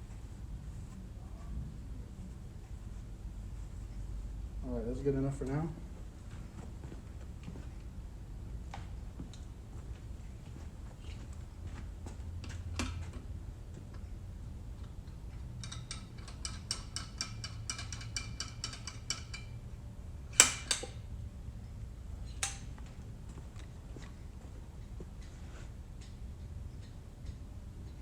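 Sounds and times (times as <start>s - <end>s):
sharp metal clank: 20.3s - 21.0s
light metallic clicks: 22.3s - 23.0s.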